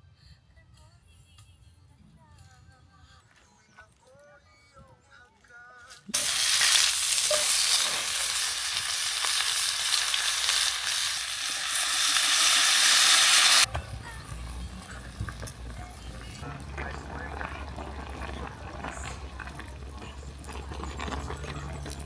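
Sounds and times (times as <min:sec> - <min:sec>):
food sizzling in hot oil: 0:06.2 - 0:15.7.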